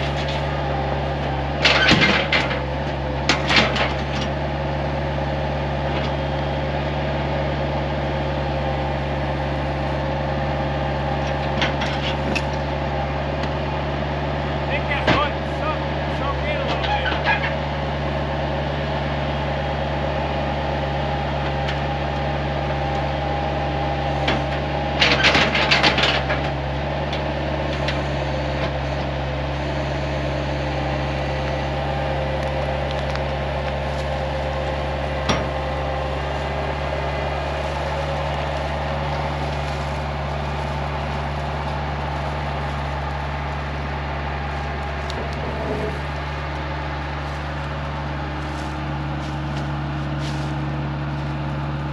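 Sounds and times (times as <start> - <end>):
rattling clatter: 1.5 - 4.3
motor humming: 24.0 - 51.9.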